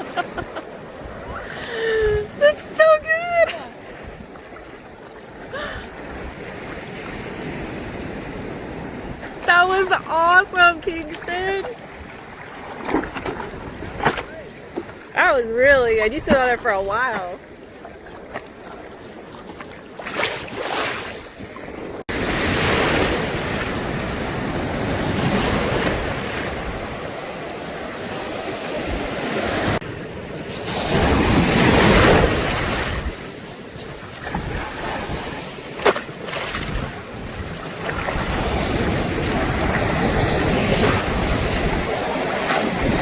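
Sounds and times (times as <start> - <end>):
ocean surf breaking: 0.0 - 19.0, 20.2 - 43.0
wind buffeting microphone: 27.8 - 43.0.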